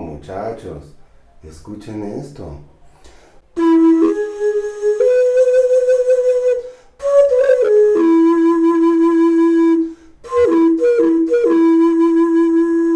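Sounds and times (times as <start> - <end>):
flute-like wind instrument: 3.6 - 12.9.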